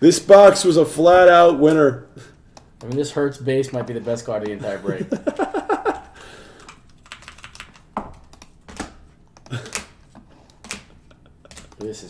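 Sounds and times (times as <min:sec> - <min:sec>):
computer keyboard typing: 0:02.5 - 0:12.0.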